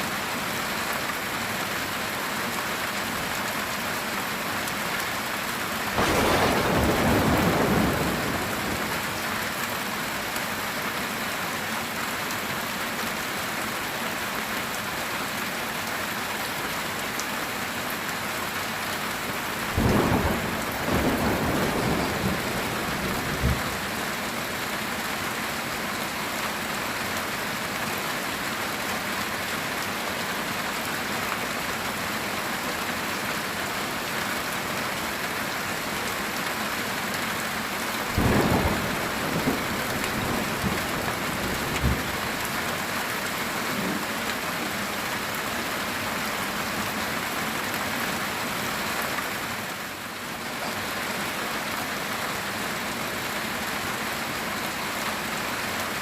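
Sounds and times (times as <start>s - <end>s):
heavy rain on a tin roof: 0.0s - 56.0s
thunder rumbling: 6.0s - 9.3s, 19.8s - 24.1s, 38.2s - 42.5s.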